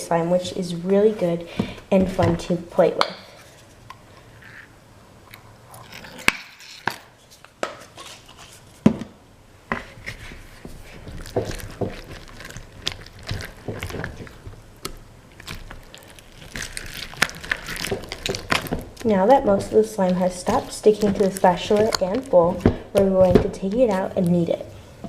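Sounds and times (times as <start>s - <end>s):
spatula stirring sticky slime: 0.1s - 3.6s, 9.8s - 24.8s.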